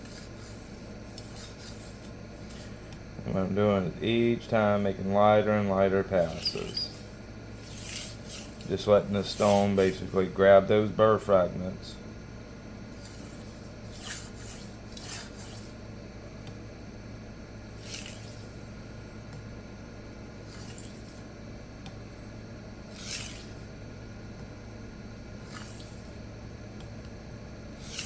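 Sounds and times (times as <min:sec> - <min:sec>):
knife scraping sharpening stone: 0:06.2 - 0:09.7, 0:13.0 - 0:15.7, 0:17.8 - 0:18.5, 0:22.9 - 0:23.6, 0:25.4 - 0:26.0, 0:27.8 - 0:28.0.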